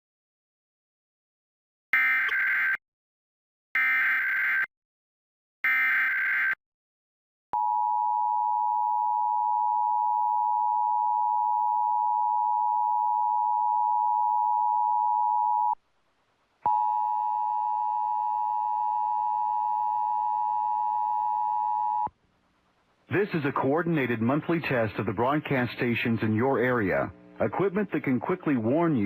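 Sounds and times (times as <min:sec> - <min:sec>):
loud steady dual alert tone: 0:16.7 - 0:22.1.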